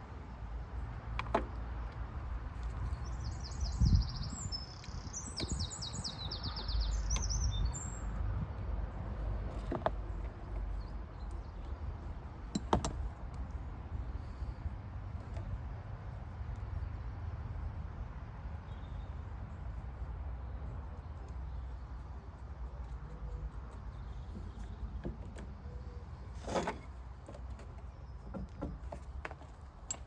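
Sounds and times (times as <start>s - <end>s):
small bird chirping: 3.0s - 8.2s.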